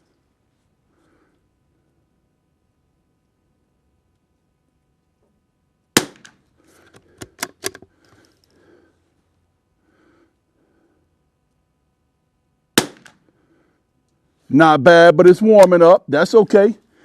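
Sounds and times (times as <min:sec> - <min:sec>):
rifle shots: 0:06.0 - 0:06.4, 0:12.8 - 0:13.2.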